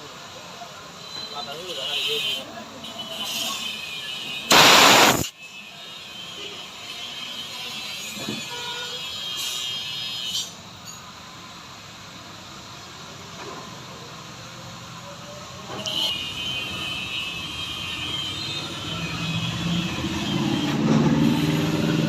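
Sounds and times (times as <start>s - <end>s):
water jet spraying: 4.5s - 5.3s.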